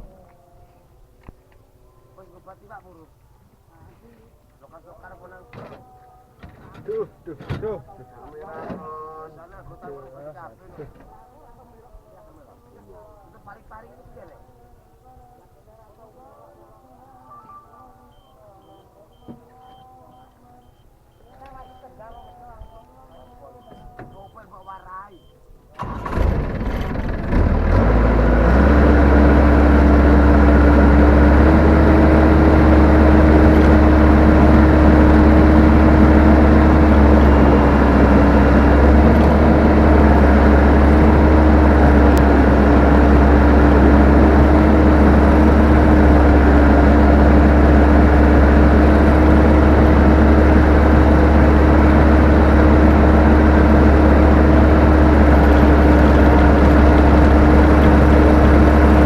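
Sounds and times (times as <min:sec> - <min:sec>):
combine harvester engine humming: 0:18.1 - 0:59.0.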